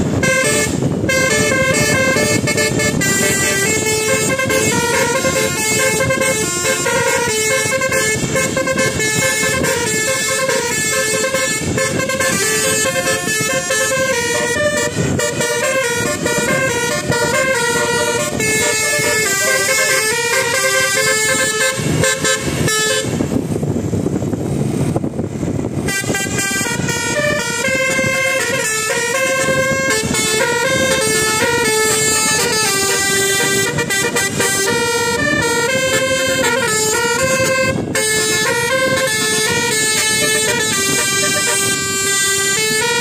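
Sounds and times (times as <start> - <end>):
multi-tone bus horn melody: 0.0 - 43.0
noisy rumble: 0.0 - 43.0.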